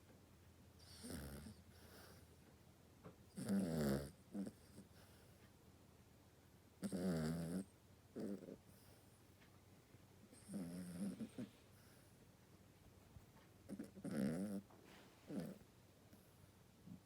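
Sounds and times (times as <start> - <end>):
dog snoring rattling: 0.8 - 2.2, 3.3 - 5.1, 6.8 - 9.0, 10.3 - 12.0, 13.6 - 15.6.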